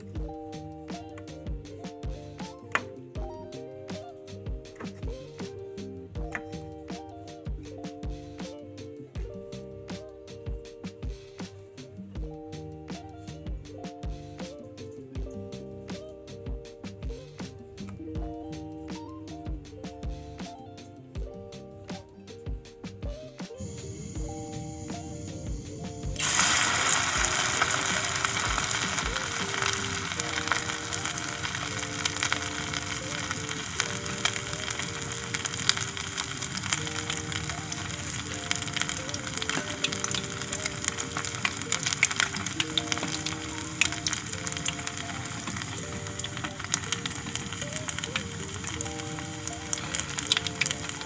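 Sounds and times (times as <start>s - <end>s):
food sizzling in hot oil: 26.2s - 33.7s.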